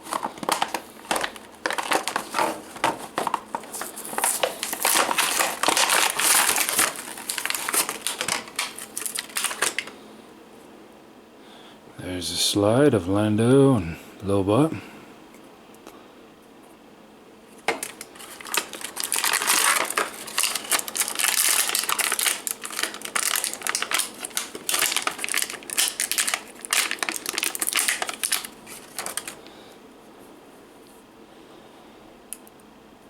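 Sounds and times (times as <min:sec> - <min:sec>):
plastic packaging crinkling: 0:00.0 - 0:10.0, 0:17.5 - 0:29.5.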